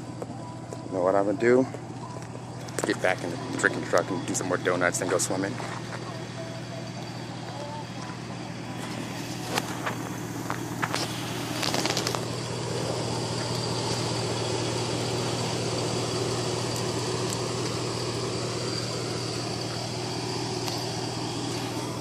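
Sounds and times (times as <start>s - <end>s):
car engine idling: 0.0s - 22.0s
short clatter: 9.4s - 12.3s.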